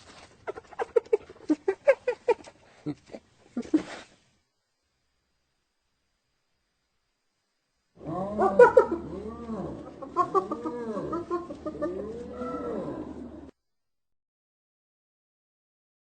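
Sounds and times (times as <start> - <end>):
hyena whooping laugh: 0.4 - 4.1, 8.0 - 13.5.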